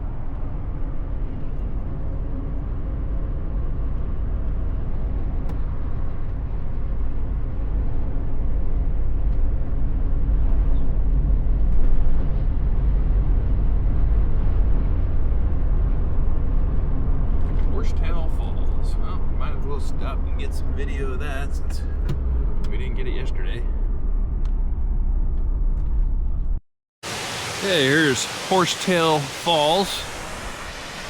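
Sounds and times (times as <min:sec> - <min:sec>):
engine and road noise in cabin: 0:00.0 - 0:27.3.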